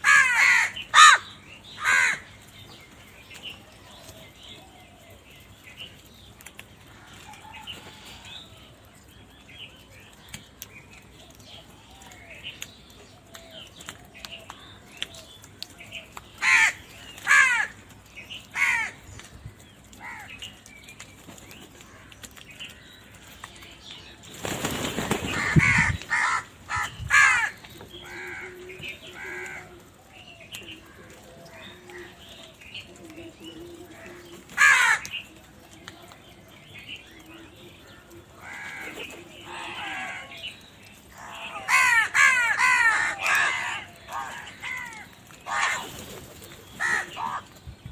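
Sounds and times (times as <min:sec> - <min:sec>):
crows cawing: 0:00.0 - 0:02.4, 0:16.4 - 0:17.8, 0:18.5 - 0:19.1, 0:20.0 - 0:20.3, 0:25.3 - 0:29.9, 0:33.9 - 0:35.2, 0:38.4 - 0:40.4, 0:41.1 - 0:46.0, 0:46.8 - 0:47.5
wings flapping: 0:24.2 - 0:26.4, 0:44.7 - 0:47.4.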